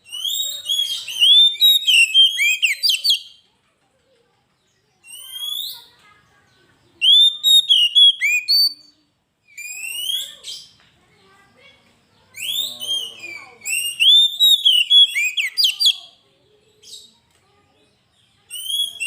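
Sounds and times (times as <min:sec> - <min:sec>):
bird singing whistled song: 0:00.0 - 0:03.4, 0:05.0 - 0:05.9, 0:06.9 - 0:10.8, 0:12.3 - 0:16.2, 0:18.1 - 0:19.0.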